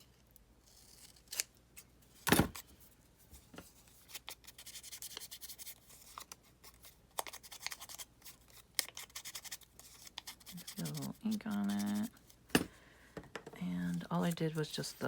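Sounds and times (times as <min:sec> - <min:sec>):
paper rubbing on table: 0:09.1 - 0:12.1.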